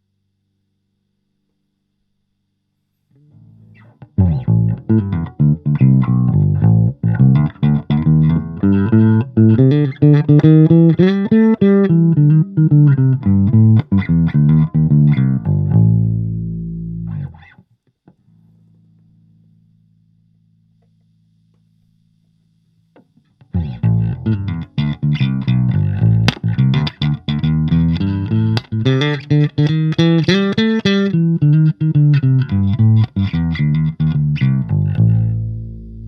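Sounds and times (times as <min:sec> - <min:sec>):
electric bass guitar notes: 0:03.4 - 0:17.4, 0:23.6 - 0:36.0.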